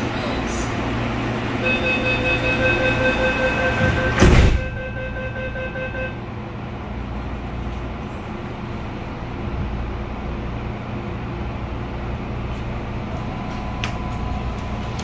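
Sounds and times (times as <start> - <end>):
train interior hum: 0.0 - 15.0
door-closing warning beeps: 1.8 - 4.9
sliding doors thudding shut: 3.7 - 4.8.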